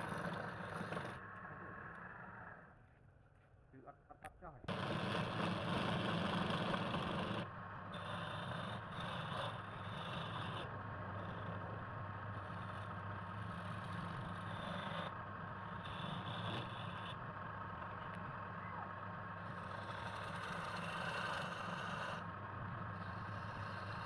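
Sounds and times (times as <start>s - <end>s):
wood lathe motor hum: 4.7s - 24.0s
turning tool scraping wood: 12.3s - 17.3s, 19.4s - 22.2s.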